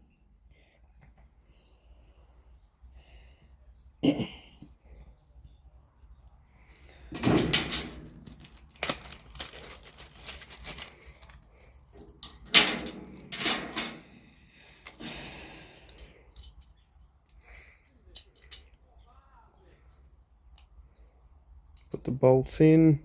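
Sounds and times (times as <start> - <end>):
keys and lock parts jangling: 7.2 - 14.2, 15.9 - 16.8, 18.1 - 18.8.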